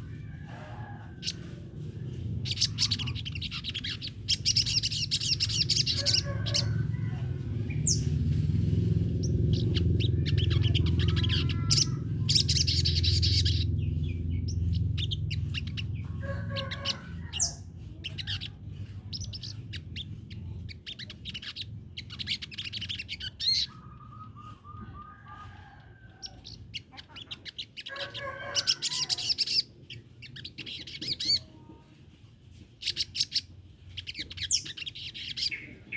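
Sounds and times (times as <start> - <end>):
low rumble: 0.0 - 27.0.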